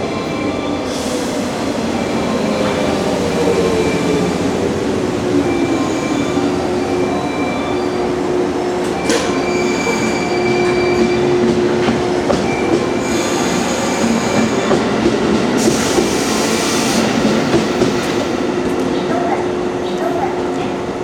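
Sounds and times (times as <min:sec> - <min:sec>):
train rumble and clatter: 0:00.0 - 0:21.0
train wheels squealing on rails: 0:05.2 - 0:08.2, 0:08.8 - 0:20.6.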